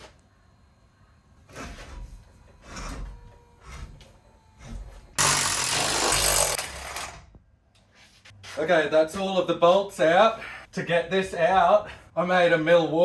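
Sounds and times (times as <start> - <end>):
power tool running: 1.5 - 7.2.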